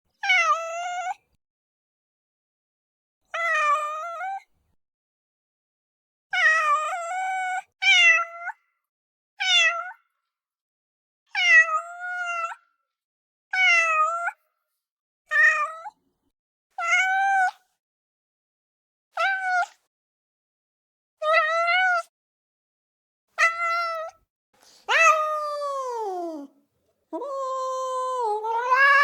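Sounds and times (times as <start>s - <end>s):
cat meowing: 19.2s - 19.8s, 21.2s - 22.1s, 23.4s - 24.2s, 24.9s - 26.5s, 27.2s - 29.0s.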